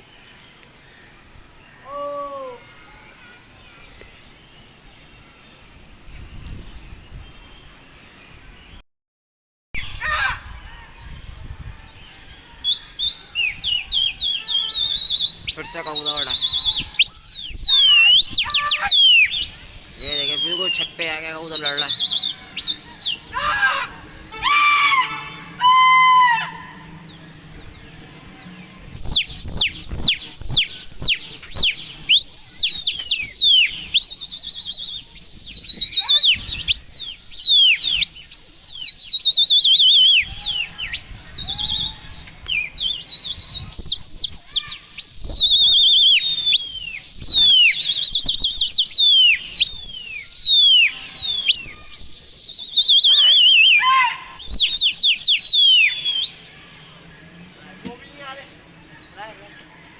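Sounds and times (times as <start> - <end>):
shrill human whistling: 12.6 - 23.3, 29.0 - 56.5.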